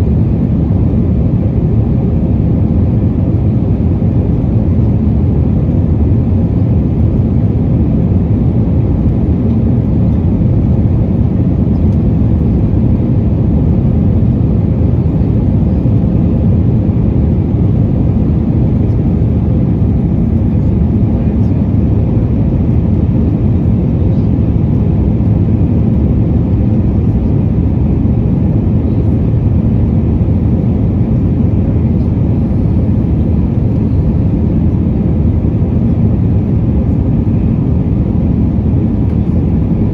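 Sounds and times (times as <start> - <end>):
jet engines from aircraft cabin: 0.0 - 39.9.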